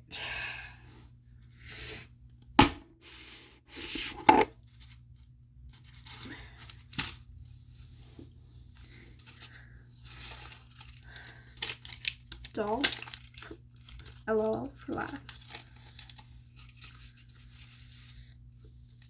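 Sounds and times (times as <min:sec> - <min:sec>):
packaging tearing and rustling: 0:10.1 - 0:14.3, 0:15.0 - 0:18.2.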